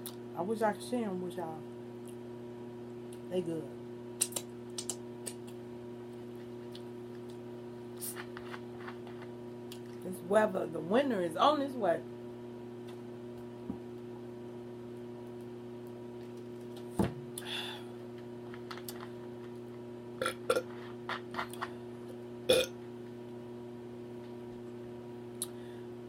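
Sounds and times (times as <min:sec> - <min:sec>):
steady low hum: 0:00.0 - 0:26.0
mouth clicks and smacks chewing: 0:04.2 - 0:05.6
short burp: 0:20.2 - 0:20.7, 0:22.5 - 0:22.8.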